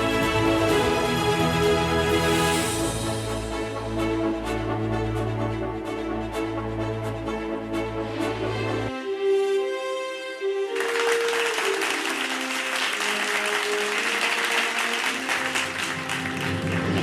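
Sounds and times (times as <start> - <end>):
music with long held notes: 0.0 - 17.0
audience applause: 10.7 - 17.0.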